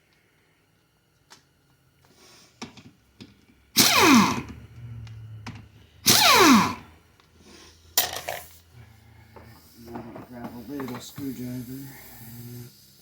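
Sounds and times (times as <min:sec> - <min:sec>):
power tool motor whine: 0:03.8 - 0:04.5, 0:06.0 - 0:06.9.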